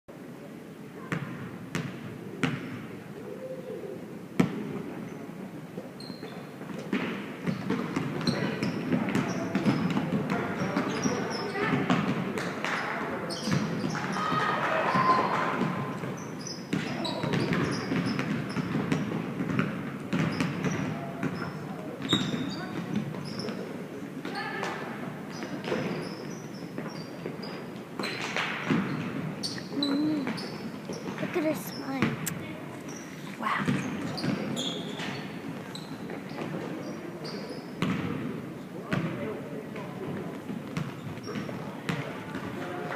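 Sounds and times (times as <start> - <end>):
murmur of voices in a hall: 0.1 - 42.9
sneaker squeaks: 5.8 - 12.1, 12.7 - 38.1, 40.8 - 42.5.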